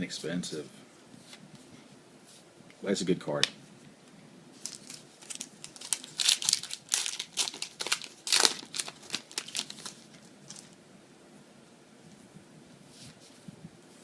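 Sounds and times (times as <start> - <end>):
foil wrapper crinkling: 4.6 - 10.8.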